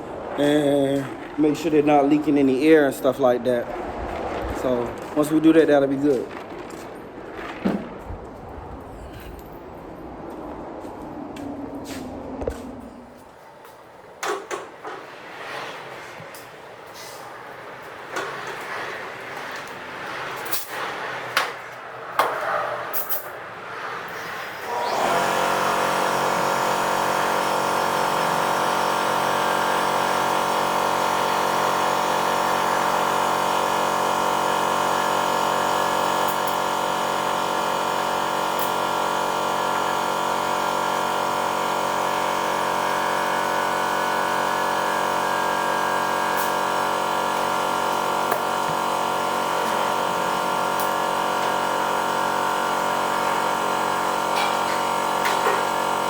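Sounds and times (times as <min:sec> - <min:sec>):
air compressor running: 0:00.0 - 0:02.8, 0:24.0 - 0:56.0.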